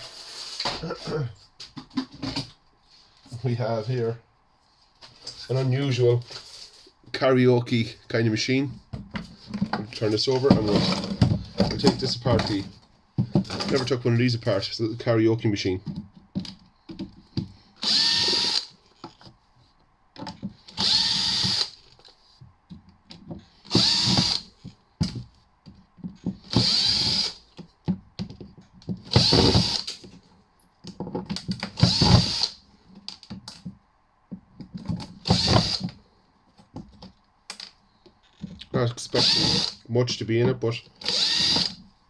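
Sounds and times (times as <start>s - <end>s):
drill-driver backing out screws: 17.8s - 18.7s, 20.7s - 21.8s, 23.7s - 24.5s, 26.5s - 27.4s, 29.1s - 30.0s, 31.8s - 32.5s, 35.2s - 35.9s, 39.2s - 39.8s, 41.0s - 41.8s.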